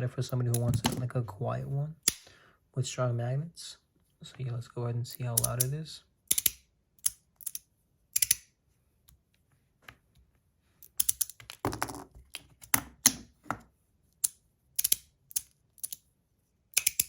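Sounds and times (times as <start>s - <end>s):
magnets snapping with clicks: 2.0s - 2.3s, 6.3s - 8.5s, 14.2s - 16.0s, 16.7s - 17.0s.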